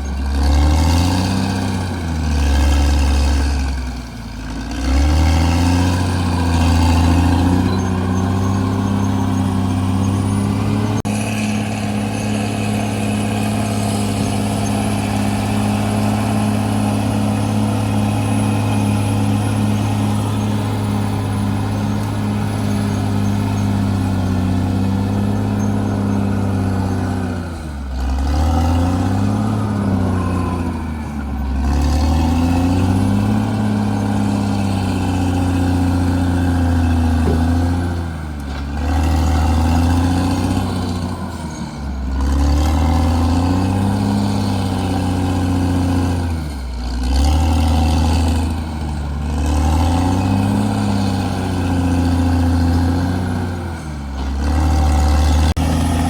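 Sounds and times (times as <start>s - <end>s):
bulldozer diesel engine revving: 0.0s - 56.0s.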